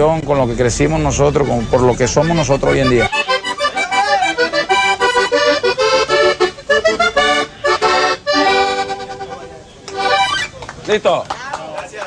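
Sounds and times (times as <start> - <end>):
button accordion playing: 1.2 - 10.6.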